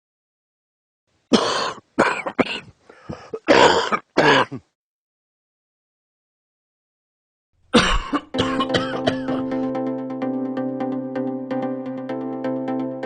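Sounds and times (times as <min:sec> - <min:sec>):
person coughing: 0:01.3 - 0:04.7, 0:07.7 - 0:09.6.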